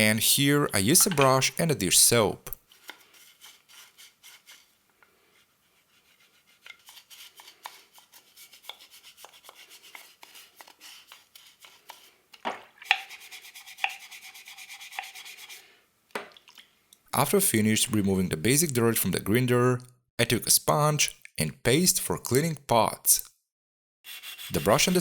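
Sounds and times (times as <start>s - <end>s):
brush scrubbing metal: 2.7s - 12.1s, 12.9s - 15.6s.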